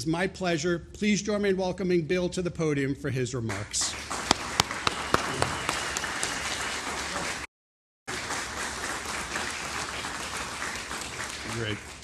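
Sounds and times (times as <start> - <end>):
audience applauding: 3.8 - 7.5, 8.1 - 12.0
sharp single claps: 3.9 - 6.6.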